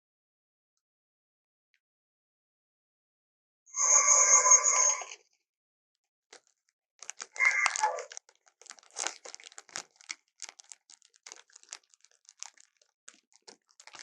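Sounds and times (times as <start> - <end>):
leopard crunching and tearing food: 6.3 - 14.0.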